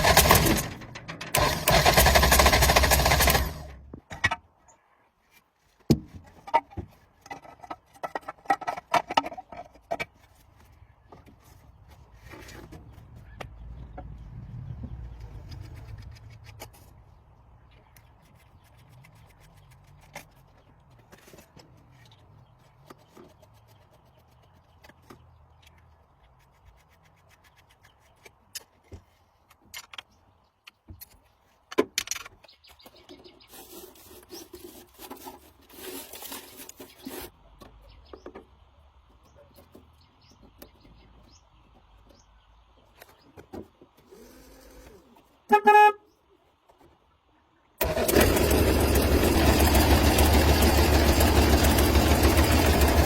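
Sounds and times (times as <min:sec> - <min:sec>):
diesel engine running: 0:00.0 - 0:03.8, 0:47.8 - 0:53.0
clicks and scrapes of work: 0:05.2 - 0:13.5, 0:15.2 - 0:17.2, 0:17.8 - 0:38.4
truck horn toot: 0:45.5 - 0:46.1.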